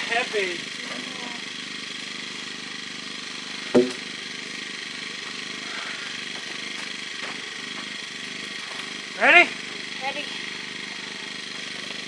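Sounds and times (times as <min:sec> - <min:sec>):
engine idling: 0:00.0 - 0:12.0
sharp loud knock: 0:03.8 - 0:04.0.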